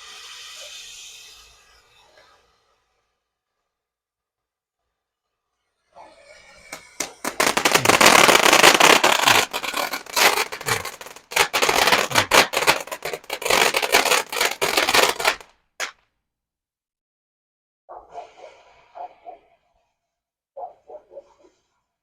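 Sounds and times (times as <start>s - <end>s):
firework hiss: 0.0s - 3.1s, 6.2s - 15.9s
firework crackling: 6.2s - 15.9s
firework pop: 6.6s - 15.9s.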